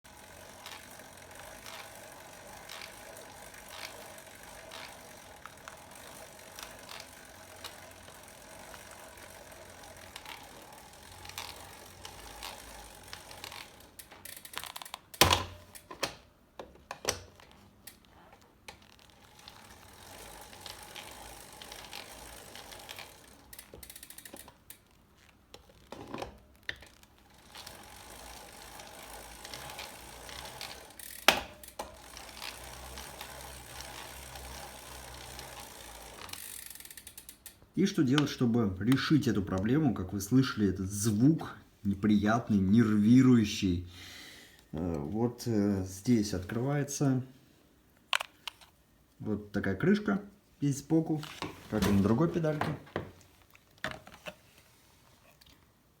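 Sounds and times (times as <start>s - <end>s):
pedals clicking and creaking: 0.1s - 40.4s, 51.0s - 54.4s.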